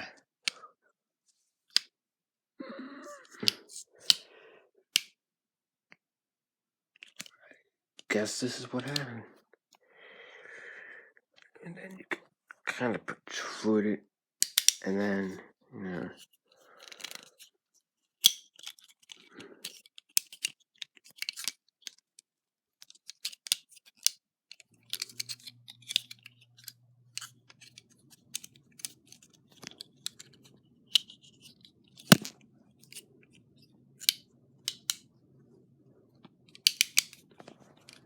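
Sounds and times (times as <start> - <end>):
multitool metal clicks and snaps: 14.4 - 14.9, 32.1 - 32.3, 34.0 - 35.0, 36.6 - 37.2.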